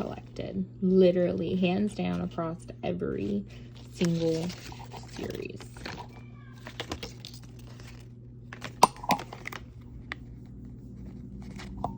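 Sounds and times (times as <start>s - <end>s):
plastic pieces tapping and rattling: 5.2s - 9.7s.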